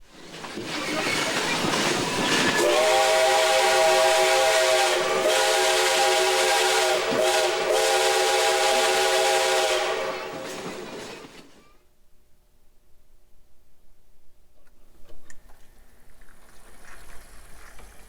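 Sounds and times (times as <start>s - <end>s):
toy train whistle: 2.3s - 10.5s.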